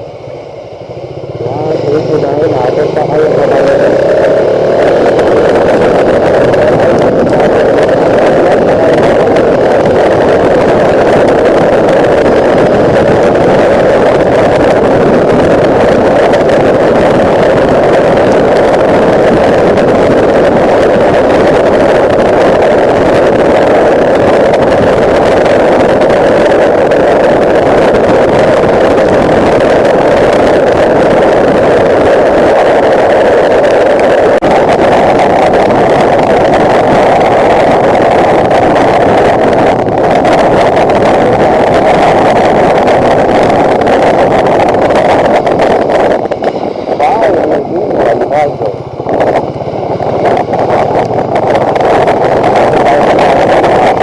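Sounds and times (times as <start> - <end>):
motorcycle engine cruising: 0.0 - 54.0
wind rushing: 0.0 - 54.0.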